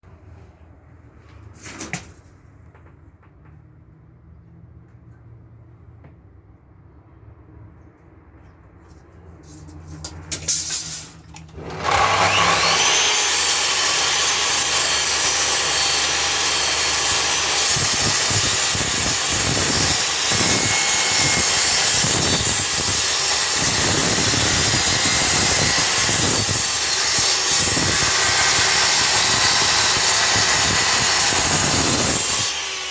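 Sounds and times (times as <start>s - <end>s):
miter saw cutting wood: 11.5s - 32.9s.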